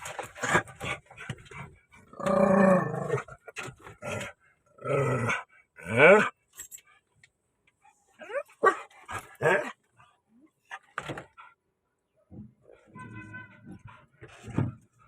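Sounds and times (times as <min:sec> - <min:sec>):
dog barking: 0:08.6 - 0:09.7.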